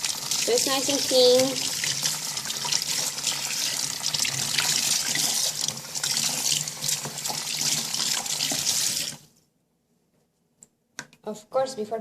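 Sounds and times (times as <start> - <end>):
tap water running into sink: 0.0 - 9.2.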